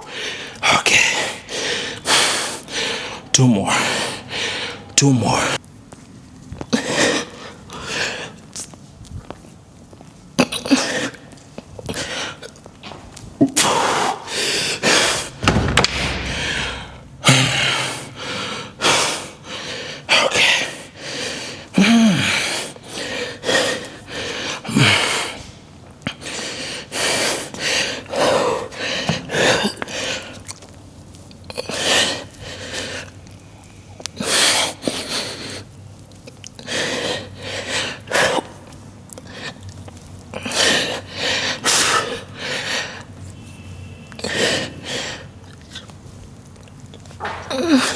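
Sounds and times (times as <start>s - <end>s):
low thud: 15.3s - 17.7s.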